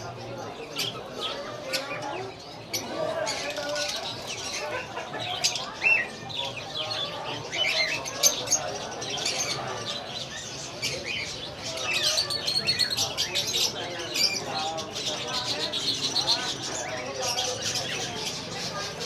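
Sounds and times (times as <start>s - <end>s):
faint voices: 0.0s - 19.0s
parrots chirping and calling: 0.0s - 19.0s.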